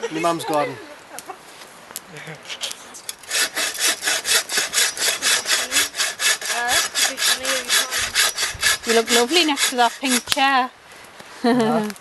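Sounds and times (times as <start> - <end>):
hand saw cutting wood: 3.1 - 10.5.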